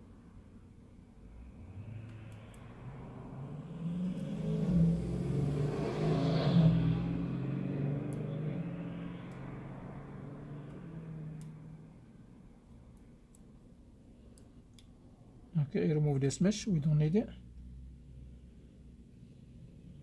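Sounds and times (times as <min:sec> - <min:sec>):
vehicle engine passing by: 0:01.2 - 0:12.4
faint clicks: 0:11.4 - 0:11.6.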